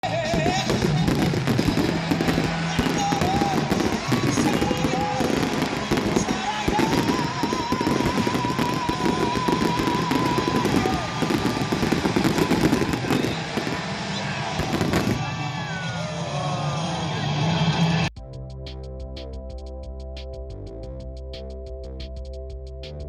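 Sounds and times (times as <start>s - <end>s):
background music: 0.0s - 23.0s
fireworks crackling and popping: 0.1s - 15.3s.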